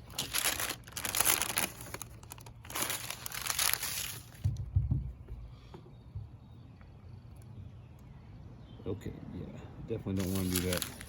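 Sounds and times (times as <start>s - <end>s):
wax paper crinkling under iron: 0.0s - 4.6s, 10.2s - 11.0s.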